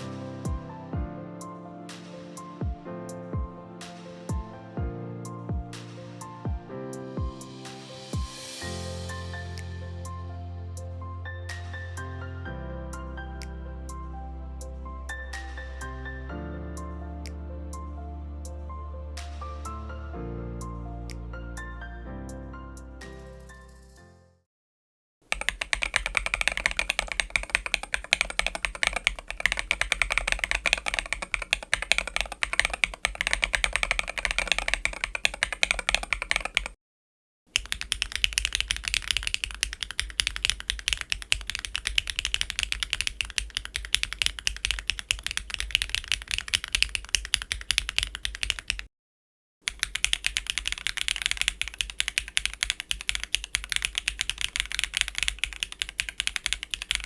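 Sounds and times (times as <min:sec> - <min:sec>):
mechanical keyboard typing: 0:25.3 - 0:36.8, 0:37.5 - 0:48.9, 0:49.7 - 0:57.0.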